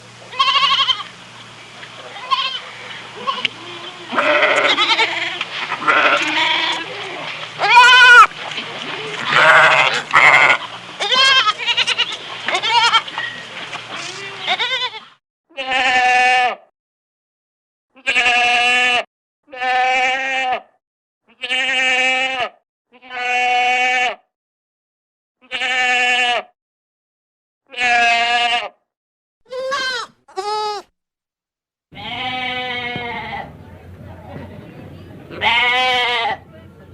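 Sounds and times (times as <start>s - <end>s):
goats bleating: 0.3s - 1.1s, 2.0s - 13.1s, 13.9s - 16.6s, 18.0s - 20.7s, 21.3s - 24.2s, 25.4s - 26.5s, 27.7s - 28.8s, 29.5s - 30.8s, 32.0s - 33.5s, 35.3s - 36.5s.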